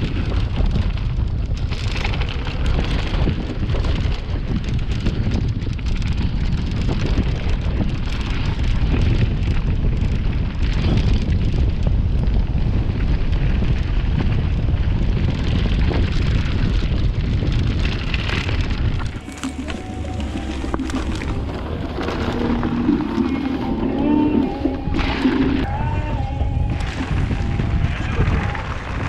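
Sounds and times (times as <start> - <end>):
bike clicks and rattles: 0.0 - 23.2
wind buffeting microphone: 0.0 - 29.0
tyres rumbling on dirt: 12.3 - 25.8.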